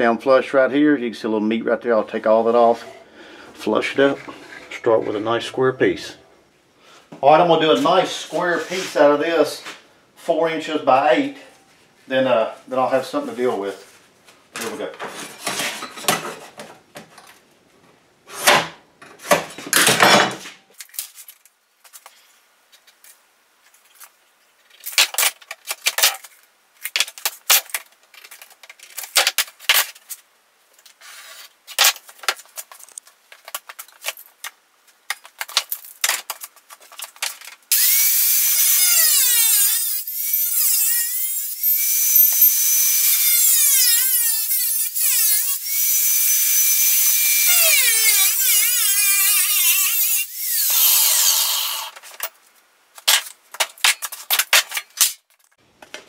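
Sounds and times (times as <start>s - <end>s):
power tool cutting metal: 37.7s - 52.0s.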